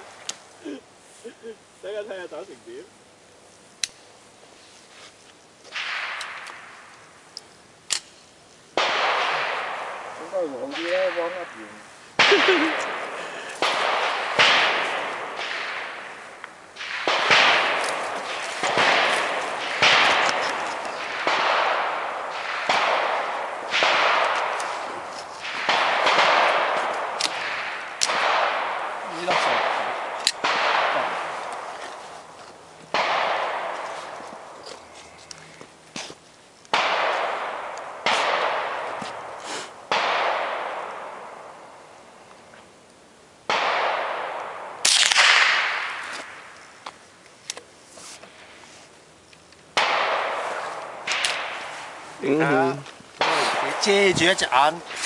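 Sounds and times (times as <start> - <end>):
dull gunshot with echo: 5.7 - 6.8, 8.8 - 31.9, 32.9 - 34.2, 36.7 - 41.5, 43.5 - 46.4, 49.8 - 55.0
sharp rifle shots: 5.7 - 7.0, 8.8 - 34.6, 36.7 - 41.7, 43.4 - 46.7, 49.7 - 55.0.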